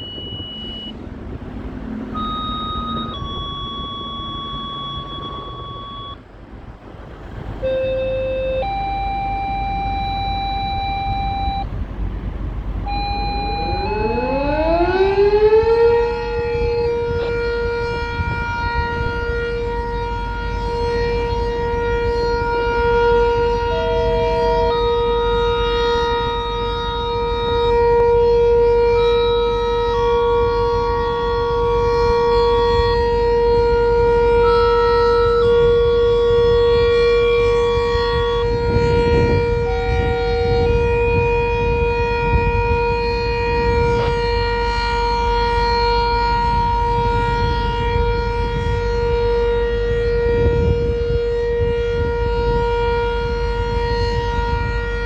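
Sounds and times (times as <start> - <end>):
warning siren steady tone: 0.0 - 55.0.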